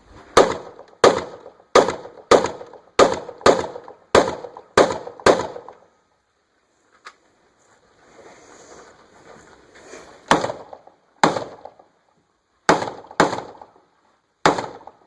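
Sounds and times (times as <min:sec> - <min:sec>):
rifle shots echoing: 0:00.4 - 0:05.8, 0:10.3 - 0:11.8, 0:12.7 - 0:13.8, 0:14.4 - 0:15.0.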